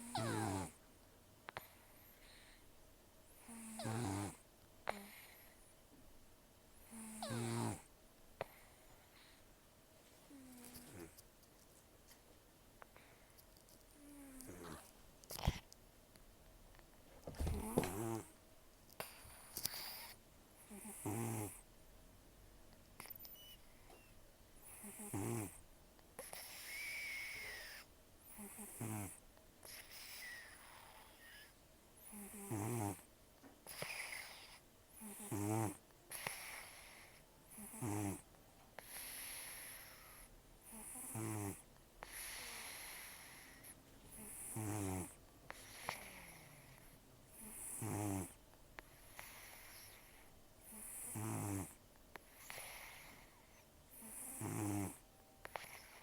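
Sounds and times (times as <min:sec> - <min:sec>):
cat snoring: 0:00.0 - 0:00.8, 0:03.3 - 0:05.6, 0:06.8 - 0:09.4, 0:10.3 - 0:11.2, 0:14.0 - 0:14.9, 0:17.4 - 0:18.3, 0:19.0 - 0:21.7, 0:23.0 - 0:25.6, 0:26.2 - 0:33.1, 0:33.7 - 0:56.0
cat noisy breathing: 0:42.0 - 0:44.3.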